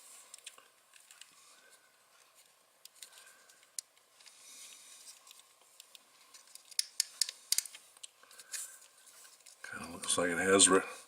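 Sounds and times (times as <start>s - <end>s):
cable ties clicking: 5.2s - 8.6s
plastic rustle: 7.8s - 9.8s.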